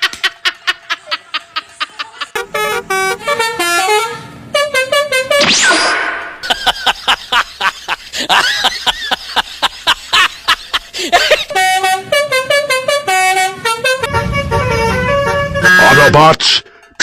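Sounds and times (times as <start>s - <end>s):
multi-tone bus horn tune: 2.3s - 5.6s, 11.2s - 17.0s
whooshing sweeps: 14.0s - 15.8s.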